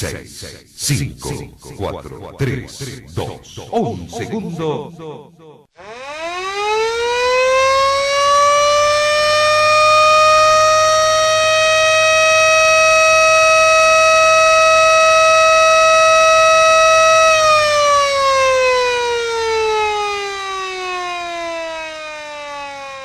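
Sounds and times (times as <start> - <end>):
siren winding down: 5.7 - 23.0.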